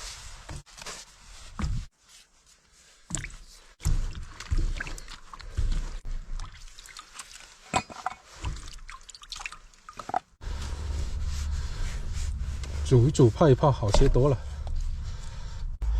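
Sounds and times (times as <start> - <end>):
water sloshing: 3.0 - 12.4.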